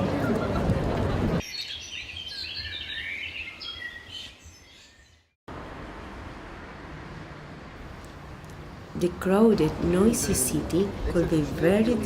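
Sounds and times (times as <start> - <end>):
birds chirping: 1.4 - 5.4
city background hum: 5.5 - 12.0.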